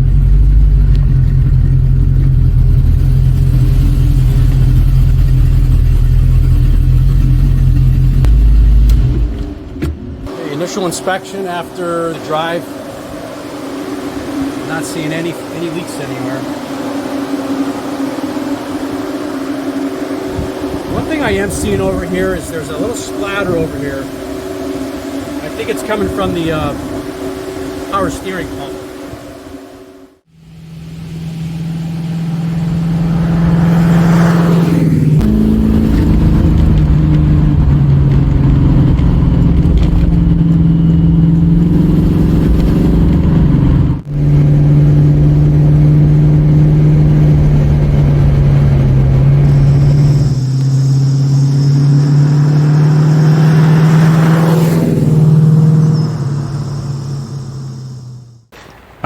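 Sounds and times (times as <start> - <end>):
car engine low rumble: 0.0 - 58.5.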